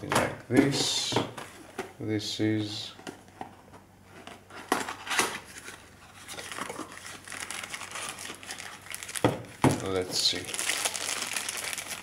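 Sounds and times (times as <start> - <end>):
packaging crinkling: 4.6 - 12.0.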